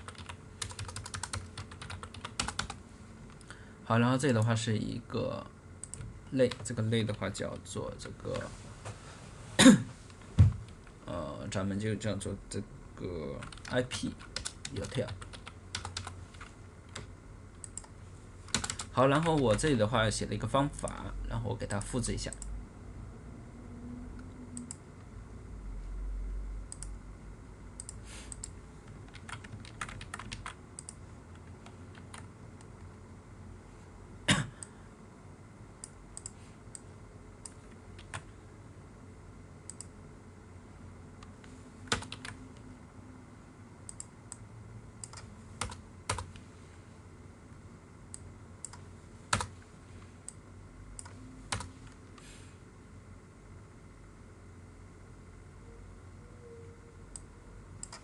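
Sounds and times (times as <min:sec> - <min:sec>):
keyboard keystrokes: 0:00.0 - 0:02.8.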